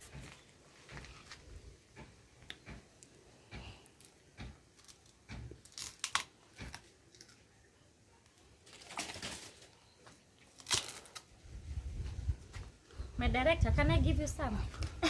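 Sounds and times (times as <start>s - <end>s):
sugarcane crunching and tearing: 4.0s - 7.5s, 10.4s - 11.3s.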